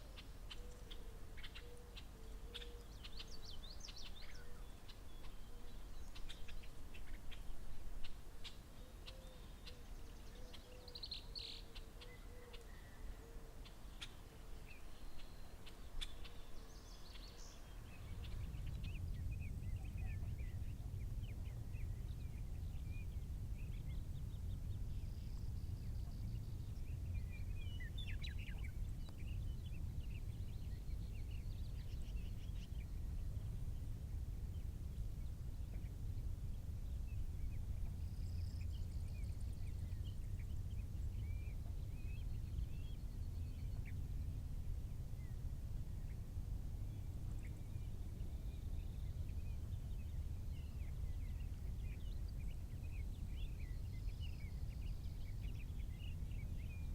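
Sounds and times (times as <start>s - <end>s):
small birds chirping and calling: 0.0s - 44.3s
low rumble: 17.7s - 56.9s.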